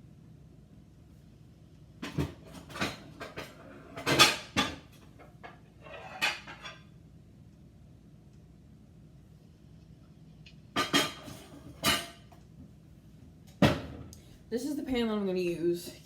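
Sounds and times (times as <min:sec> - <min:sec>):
pans and dishes clattering: 0:02.0 - 0:06.9, 0:10.8 - 0:12.4, 0:13.6 - 0:14.1.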